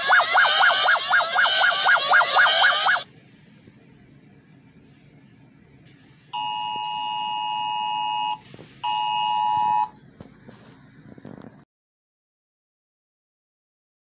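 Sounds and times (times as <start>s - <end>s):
harsh two-tone alarm beep: 0.0s - 3.0s, 6.4s - 10.0s.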